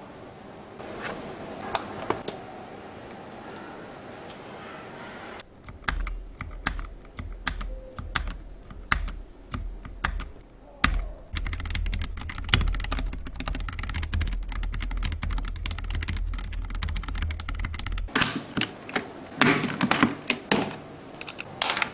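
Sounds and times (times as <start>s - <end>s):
keyboard keys clacking: 5.4s - 21.9s.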